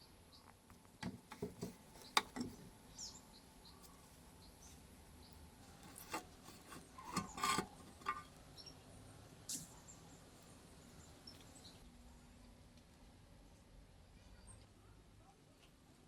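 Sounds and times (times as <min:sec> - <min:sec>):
scrapes and clicks on metal tank: 0:01.0 - 0:02.7, 0:05.8 - 0:08.3.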